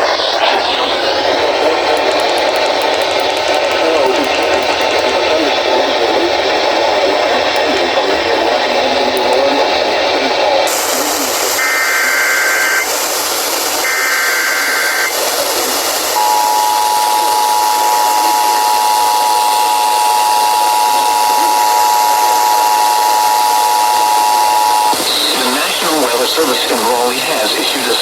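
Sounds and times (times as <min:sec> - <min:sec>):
data bursts: 0:00.0 - 0:28.0
radio hiss: 0:00.0 - 0:28.0
two-tone attention signal: 0:16.2 - 0:25.0.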